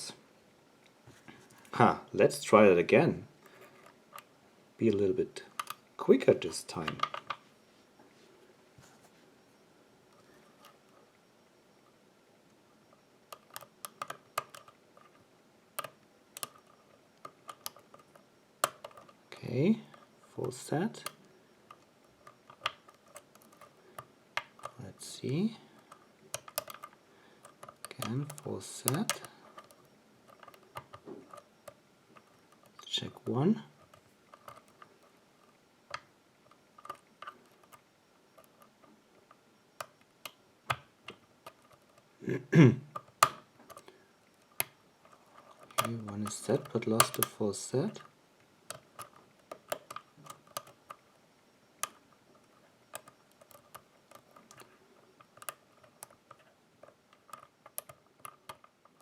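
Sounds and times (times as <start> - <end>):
lock pick clicking on pins: 5.5 - 5.8, 13.3 - 15.2, 15.8 - 19.2, 19.9 - 42.1, 42.9 - 51.1, 51.8 - 59.0
lock pick clicking in lock: 26.3 - 31.5, 45.5 - 47.3.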